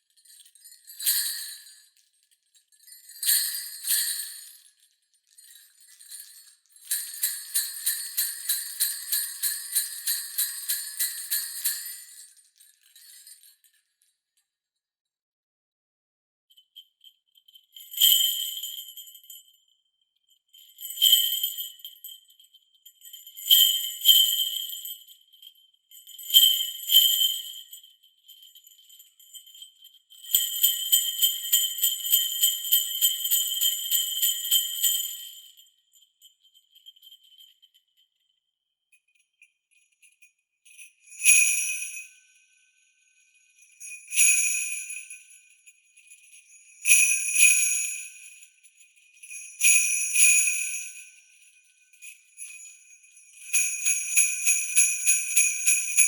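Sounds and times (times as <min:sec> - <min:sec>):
sleigh bells jingling: 0:00.0 - 0:02.0, 0:02.8 - 0:04.6, 0:05.3 - 0:13.5, 0:28.5 - 0:35.3, 0:49.2 - 0:51.0, 0:52.0 - 0:56.0.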